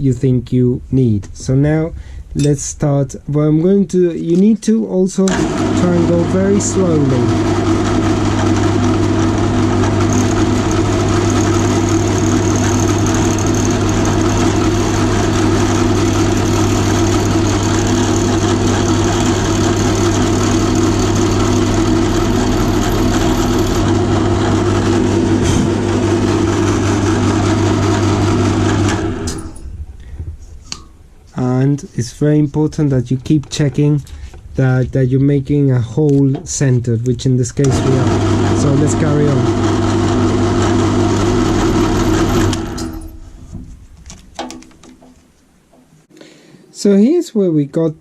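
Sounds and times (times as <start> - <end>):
electric drill boring: 5.3 - 29.6, 37.6 - 43.2.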